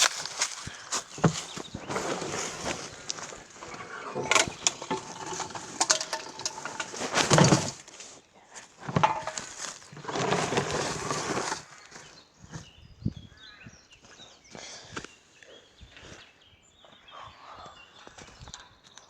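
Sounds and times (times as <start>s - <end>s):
rustling and scraping handling noise: 0.0s - 12.8s
faint bird chirps: 11.7s - 19.0s.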